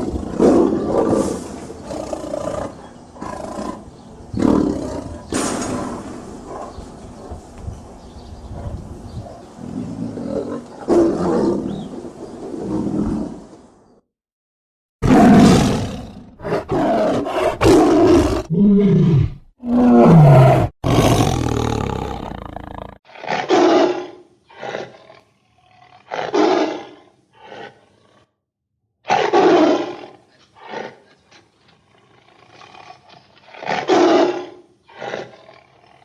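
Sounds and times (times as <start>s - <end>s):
tiger roaring: 0.0s - 7.3s, 15.0s - 28.3s, 29.1s - 36.0s.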